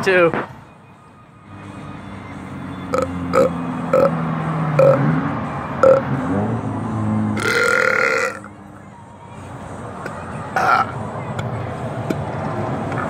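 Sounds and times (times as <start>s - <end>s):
long low burp: 2.9s - 4.2s, 4.8s - 5.0s, 5.8s - 6.0s, 7.4s - 8.5s, 10.6s - 11.0s.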